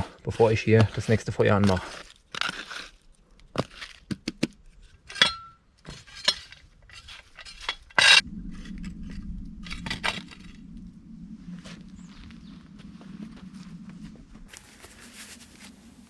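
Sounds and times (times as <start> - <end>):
steady low drone: 8.2 - 14.5.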